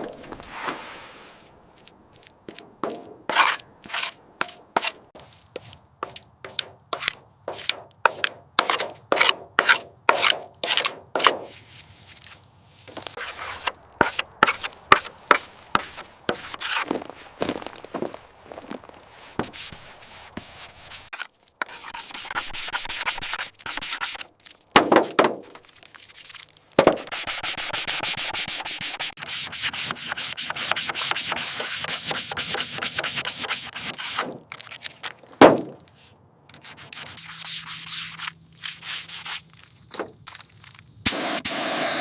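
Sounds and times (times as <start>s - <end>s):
sanding rasping rub: 19.2s - 21.1s, 21.7s - 24.2s, 27.0s - 34.2s, 36.6s - 39.4s.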